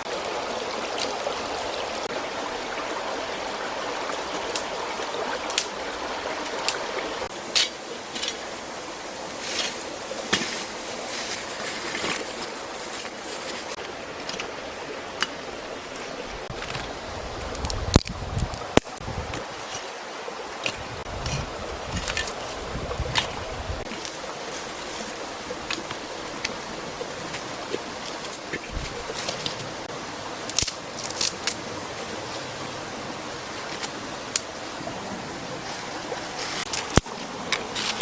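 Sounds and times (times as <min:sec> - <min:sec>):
stream trickling: 0:00.0 - 0:38.0
wind rumbling on microphone: 0:16.2 - 0:19.8, 0:20.6 - 0:24.0, 0:25.0 - 0:29.9.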